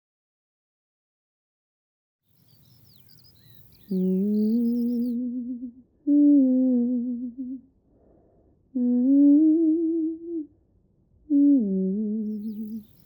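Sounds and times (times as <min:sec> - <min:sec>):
person humming: 0:03.9 - 0:07.7, 0:08.7 - 0:10.5, 0:11.3 - 0:13.0.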